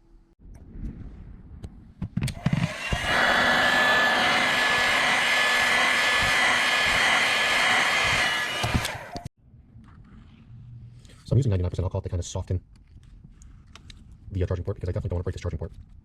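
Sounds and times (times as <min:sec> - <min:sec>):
hot-air blower rushing: 0:02.3 - 0:09.3.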